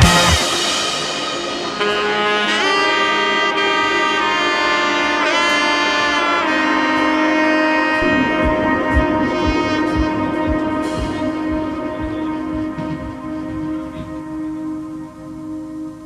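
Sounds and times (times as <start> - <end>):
drums: 0.0 - 3.3, 8.0 - 14.4
melody of long held notes: 0.0 - 16.0.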